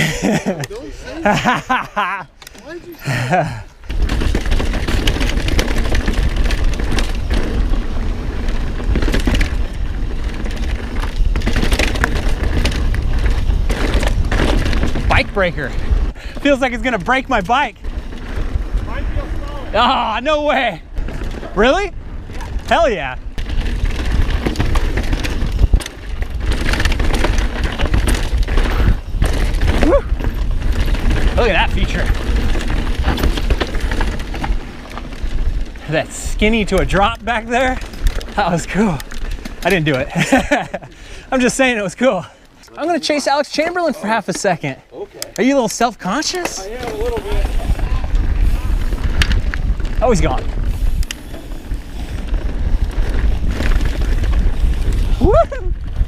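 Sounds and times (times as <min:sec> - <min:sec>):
bike tyres clattering on trail: 0:00.0 - 0:56.0
wind rumble on microphone: 0:20.8 - 0:39.6, 0:46.7 - 0:56.0.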